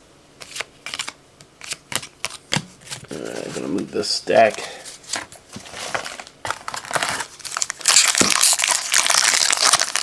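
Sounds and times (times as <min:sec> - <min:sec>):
plastic wrapper crinkling: 0:04.4 - 0:10.0.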